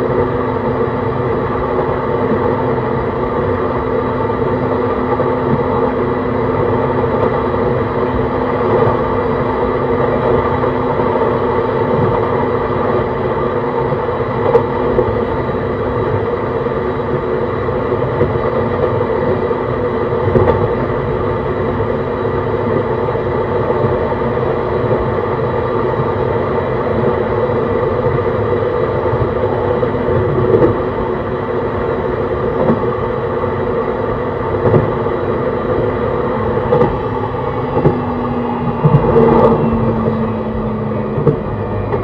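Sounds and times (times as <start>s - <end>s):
train motor humming tones: 0.0s - 42.0s
train rolling rumble: 0.0s - 42.0s.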